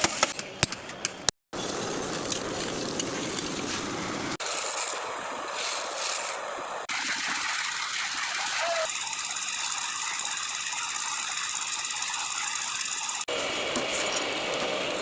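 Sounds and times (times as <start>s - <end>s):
machinery running: 6.9s - 15.0s.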